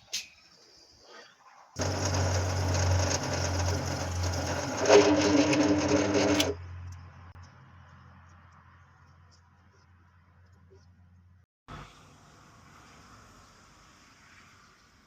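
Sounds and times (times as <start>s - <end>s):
power tool cutting wood: 1.8s - 6.6s.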